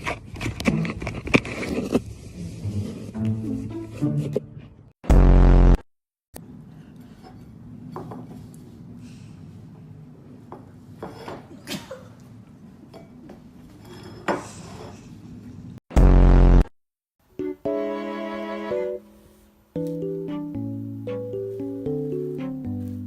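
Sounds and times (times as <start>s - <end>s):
loud buzzing tone: 5.0s - 5.9s, 15.9s - 16.7s
dishes and cutlery clinking: 11.0s - 11.6s, 12.9s - 15.0s.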